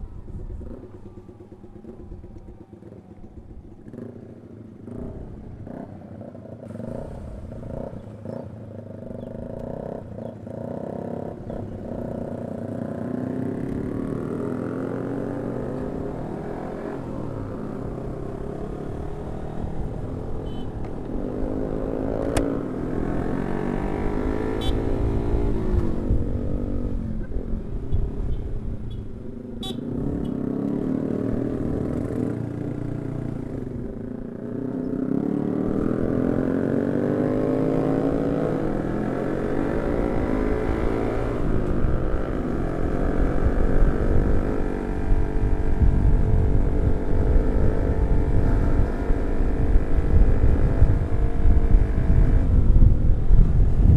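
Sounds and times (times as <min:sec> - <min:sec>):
wind rumble on microphone: 0:00.0 - 0:03.7, 0:21.0 - 0:30.3, 0:37.2 - 0:53.9
motorcycle engine revving: 0:00.2 - 0:53.9.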